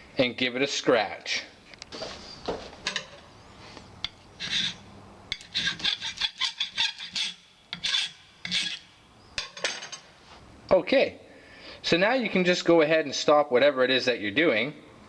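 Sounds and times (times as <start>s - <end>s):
file rasping on wire: 4.0s - 8.9s.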